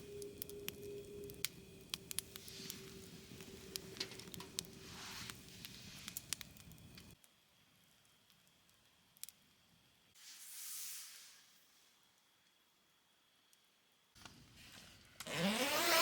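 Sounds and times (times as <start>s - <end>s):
faint steady ringing tone: 0.0s - 5.0s
wood fire crackling: 0.0s - 10.4s.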